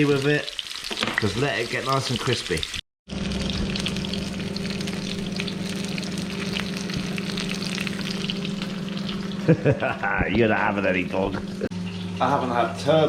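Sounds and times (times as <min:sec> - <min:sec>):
fish sizzling in oil: 0:00.0 - 0:09.8
low hum: 0:03.1 - 0:12.2.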